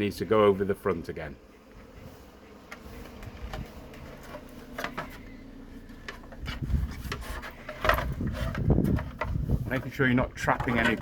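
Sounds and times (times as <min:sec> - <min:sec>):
low rubbing and bumping: 0:05.9 - 0:11.0.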